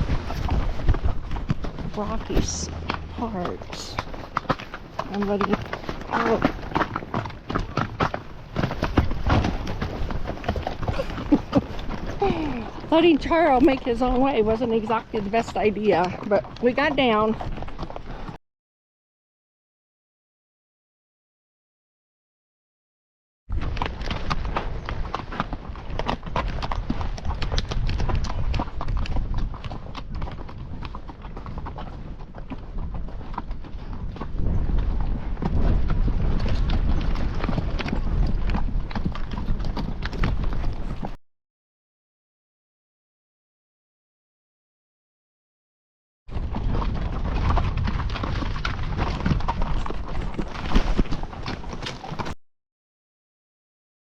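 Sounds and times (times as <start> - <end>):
horse hooves clip-clopping: 0.0 - 18.4, 23.6 - 41.2, 46.3 - 52.4
steady low rumble: 0.8 - 6.1.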